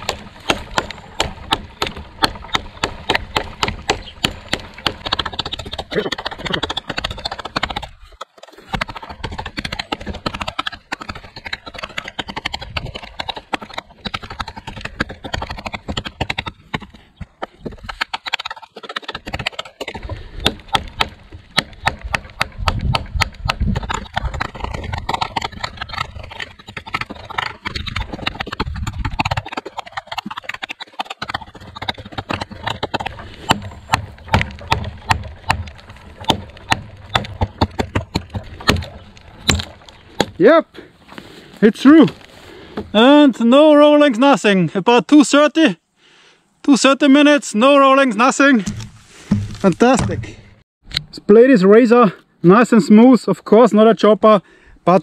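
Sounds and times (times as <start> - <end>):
knife chopping into wood: 0.0 - 25.8, 30.2 - 40.5, 48.6 - 51.1.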